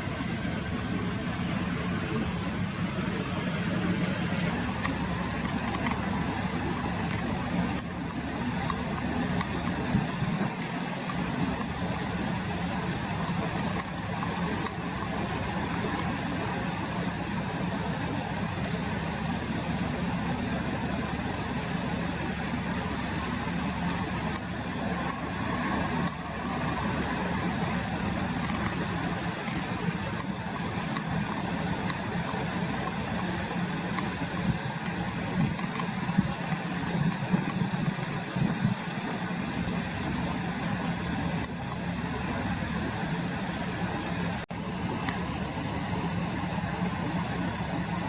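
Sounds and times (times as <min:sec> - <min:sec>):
low hum: 0:00.0 - 0:48.0.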